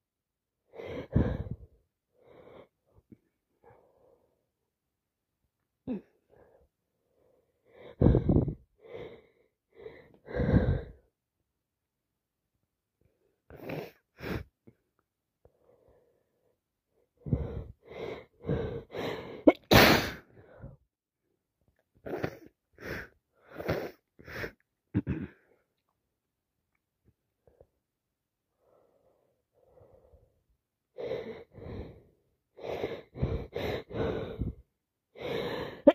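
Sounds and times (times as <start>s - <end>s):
person sneezing: 19.5s - 20.2s.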